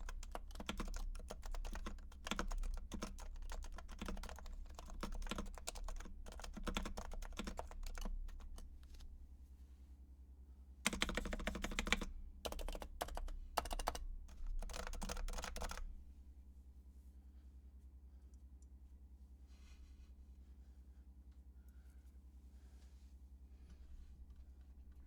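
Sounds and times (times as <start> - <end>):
muted keyboard typing: 0.0 - 9.1, 10.8 - 15.9.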